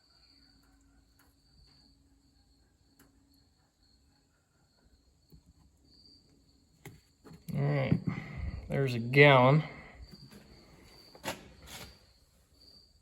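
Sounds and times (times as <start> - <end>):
cricket trill: 0.0 - 13.0.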